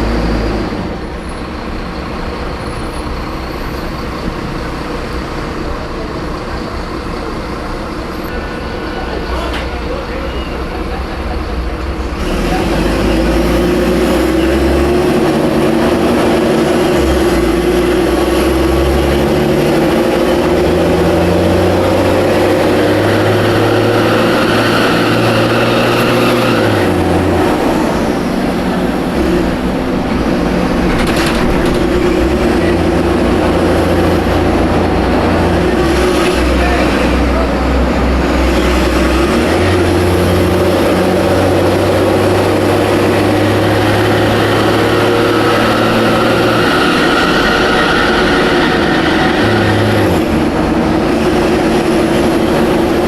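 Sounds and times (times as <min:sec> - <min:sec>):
bus diesel engine changing gear: 0:00.0 - 0:53.0.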